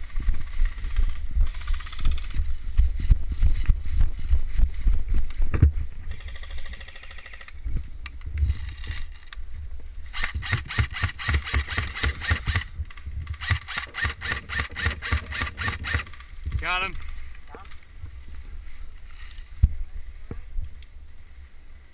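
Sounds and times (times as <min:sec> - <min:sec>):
airsoft rifle full-auto clacks: 0:06.1 - 0:07.6, 0:10.1 - 0:16.7.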